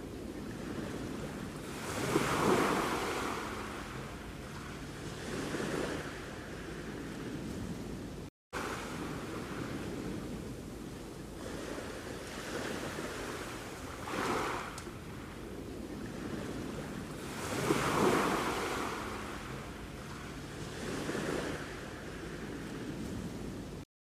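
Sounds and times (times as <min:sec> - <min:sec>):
surf rushing: 0:00.0 - 0:07.2, 0:11.3 - 0:23.8
waves breaking: 0:00.0 - 0:23.8.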